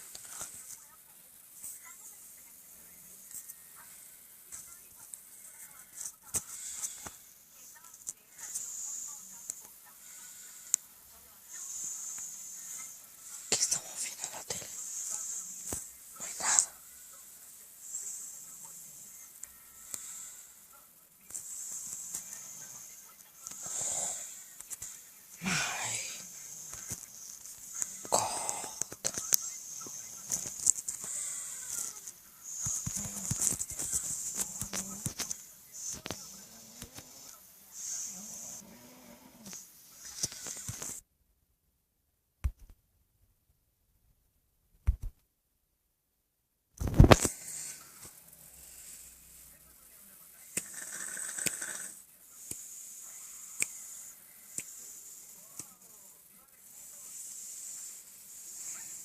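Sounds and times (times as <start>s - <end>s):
high hiss: 0.0s - 38.7s, 46.8s - 59.0s
person snoring: 21.3s - 41.0s, 50.6s - 55.2s.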